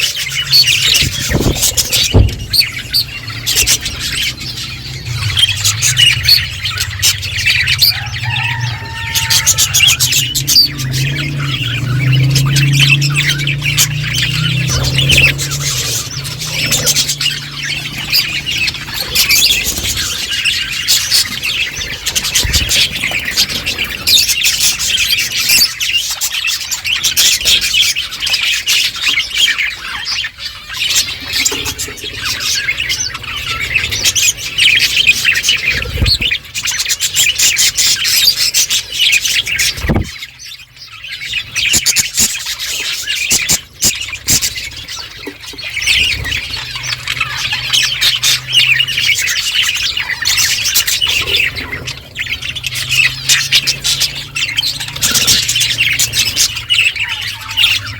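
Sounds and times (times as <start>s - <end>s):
budgerigar squawks: 0.0s - 26.4s
budgerigars chirping and chattering: 0.0s - 57.9s.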